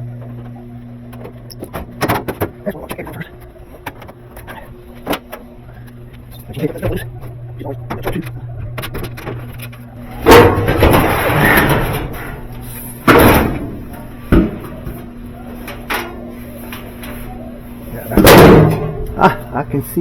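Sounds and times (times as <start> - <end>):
low hum: 0.0 - 20.0
metal scraping: 9.0 - 19.2
sheet metal banging: 10.0 - 19.4.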